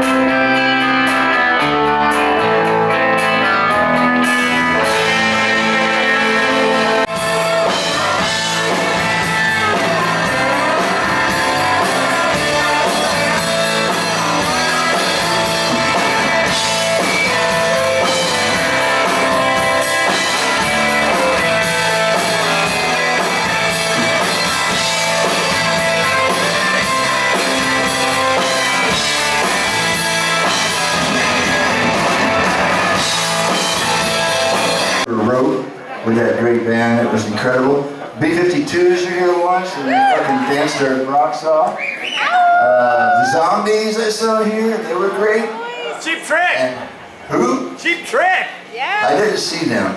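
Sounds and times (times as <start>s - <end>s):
electric guitar: 0.0s - 35.1s
drums: 0.0s - 35.8s, 39.8s - 40.5s, 41.6s - 44.2s, 45.6s - 49.9s.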